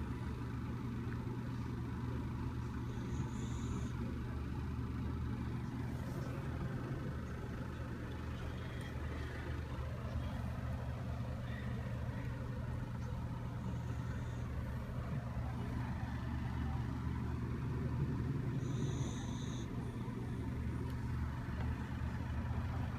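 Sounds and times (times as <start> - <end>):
dog snoring: 2.7 - 4.2, 18.3 - 20.2.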